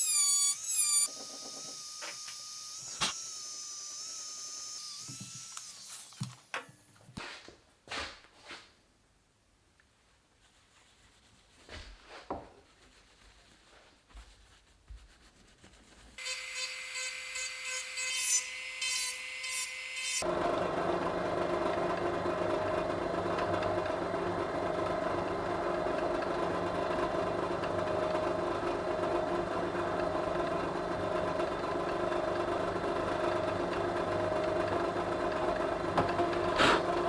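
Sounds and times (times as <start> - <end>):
small power tool running: 0.0 - 7.0, 16.2 - 21.6.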